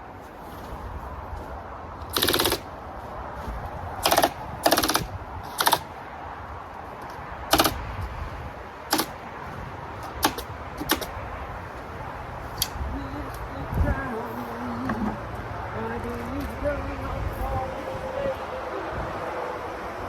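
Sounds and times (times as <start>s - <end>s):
stapler gun shooting staples: 2.1s - 2.6s, 4.0s - 5.9s, 7.5s - 7.8s, 8.9s - 9.2s, 10.1s - 11.1s.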